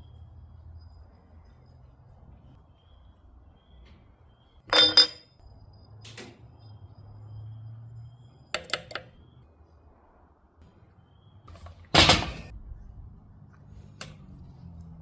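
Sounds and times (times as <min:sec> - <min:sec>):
metal tools clinking: 0:04.7 - 0:05.4.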